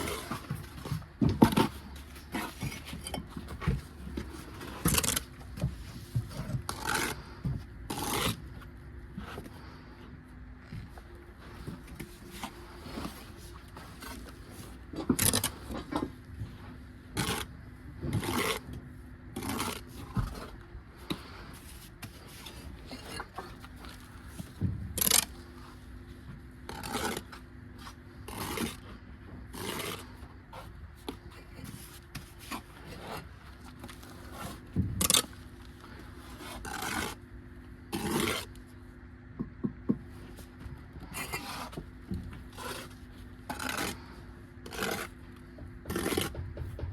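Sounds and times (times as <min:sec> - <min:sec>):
trowel scraping on brick: 0:00.0 - 0:03.6, 0:06.3 - 0:08.5, 0:17.1 - 0:18.8, 0:19.4 - 0:25.8, 0:26.7 - 0:37.2, 0:37.9 - 0:38.6, 0:41.0 - 0:45.2, 0:45.8 - 0:46.6
steady low hum: 0:00.0 - 0:46.9.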